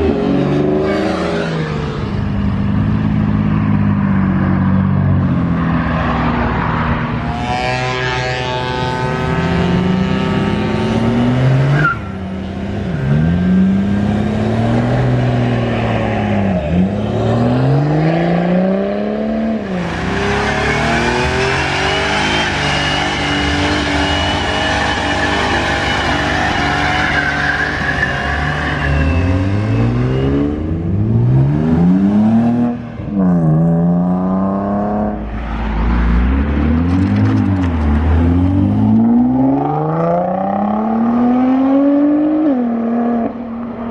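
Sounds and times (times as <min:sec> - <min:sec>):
car engines revving: 0:00.0 - 0:43.9
tires squealing: 0:06.7 - 0:12.3, 0:19.7 - 0:30.8.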